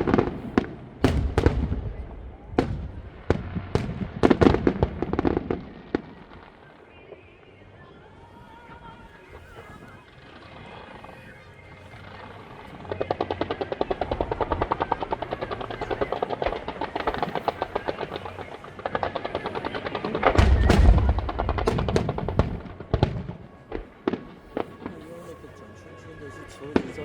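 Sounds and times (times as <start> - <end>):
deep firework boom: 0.0 - 6.5, 20.2 - 24.7
fireworks rapid bangs: 0.0 - 6.5, 12.1 - 23.4
scattered firework cracks: 0.0 - 7.3, 8.7 - 25.0.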